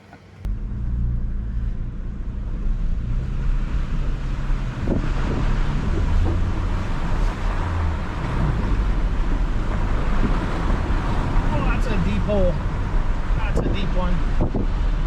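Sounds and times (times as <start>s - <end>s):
vehicle engine running at low revs: 0.0s - 15.0s
wind on microphone: 3.2s - 11.5s, 12.6s - 15.0s.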